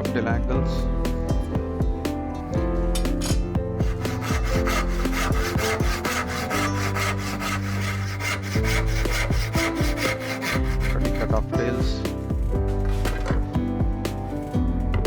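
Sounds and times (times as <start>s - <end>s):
background music: 0.0s - 15.0s
hand saw cutting wood: 3.0s - 12.3s, 12.9s - 13.5s.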